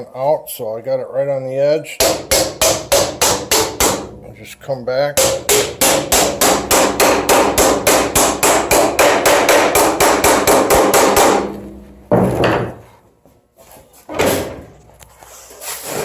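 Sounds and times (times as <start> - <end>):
hammer blows on sheet metal: 2.0 - 4.4, 5.2 - 12.8.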